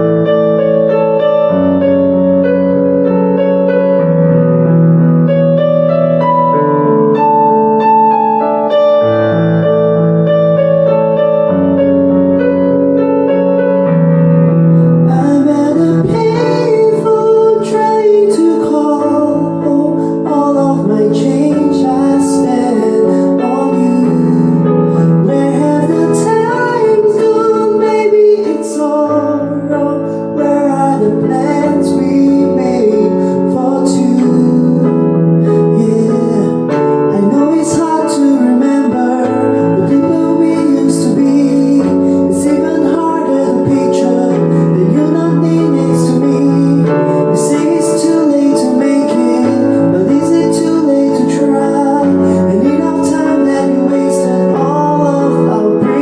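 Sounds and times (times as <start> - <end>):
slow piano chords: 0.0 - 56.0
person singing a slow ballad: 13.2 - 56.0.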